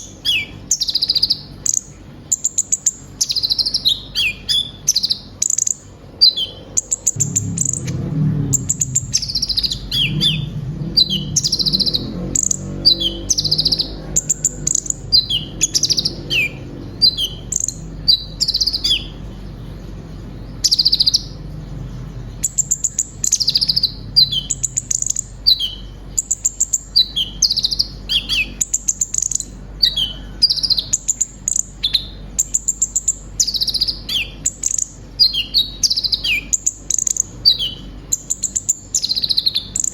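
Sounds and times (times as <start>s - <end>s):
bird singing rapid chirps and trills: 0.0s - 39.9s
low rumble: 6.7s - 26.3s.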